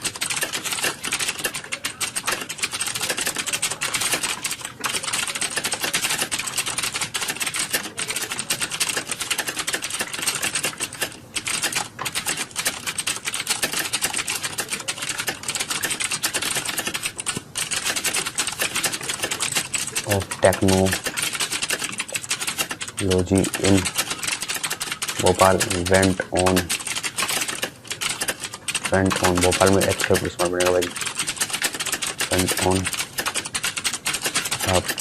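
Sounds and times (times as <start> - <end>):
fast typing on keyboard: 0.0 - 35.0.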